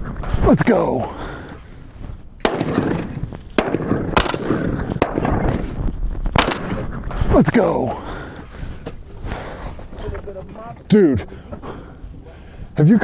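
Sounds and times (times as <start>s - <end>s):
shotguns firing: 0.0s - 10.6s.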